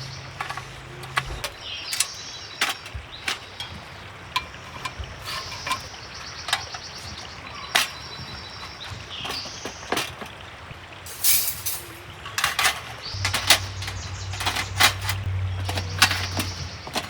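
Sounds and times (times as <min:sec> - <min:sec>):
steady background hiss: 0:11.0 - 0:13.6
sharp clicks and knocks: 0:12.3 - 0:17.0.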